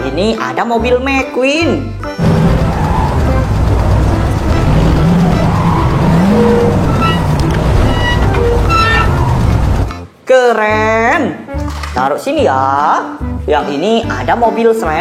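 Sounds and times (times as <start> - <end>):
background music: 0.0 - 15.0
race car engines: 2.2 - 9.9
tyre squeals: 4.4 - 9.9.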